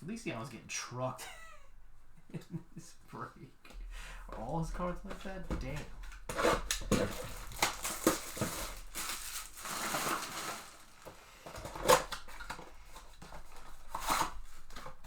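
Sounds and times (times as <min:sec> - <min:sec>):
foil wrappers crinkling and tearing: 0:04.3 - 0:15.0.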